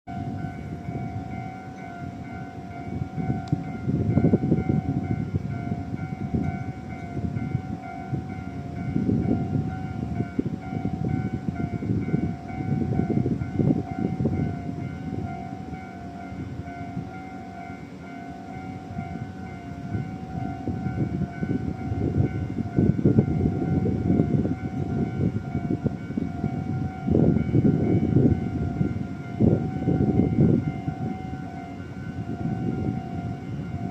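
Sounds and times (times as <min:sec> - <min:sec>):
level-crossing alarms ringing: 0:00.1 - 0:33.9.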